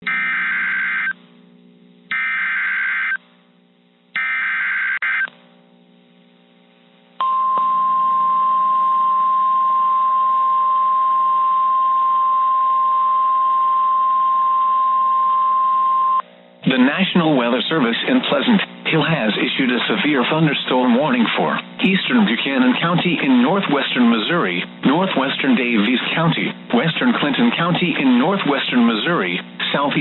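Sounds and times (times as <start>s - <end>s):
steady alarm tone: 0.1s - 1.2s, 2.1s - 3.2s, 4.2s - 5.3s.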